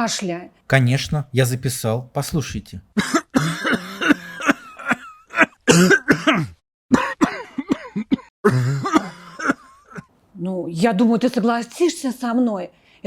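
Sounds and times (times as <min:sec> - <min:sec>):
person coughing: 0:03.0 - 0:10.1.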